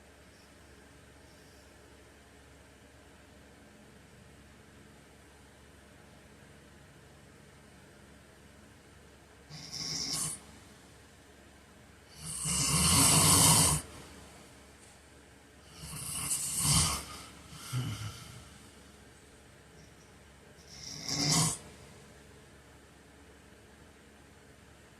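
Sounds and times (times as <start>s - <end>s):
man snoring: 9.5s - 10.4s, 12.1s - 14.2s, 15.6s - 18.8s, 20.6s - 21.7s.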